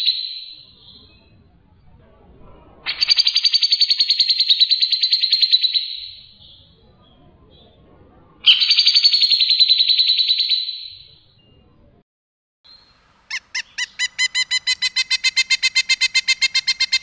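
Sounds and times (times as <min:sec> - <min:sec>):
songbird rapid trills: 0:12.8 - 0:17.0.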